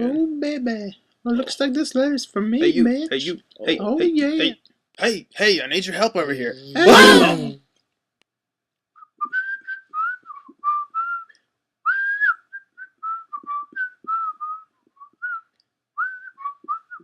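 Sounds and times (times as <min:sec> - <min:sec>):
person whistling a tune: 0:09.0 - 0:17.0.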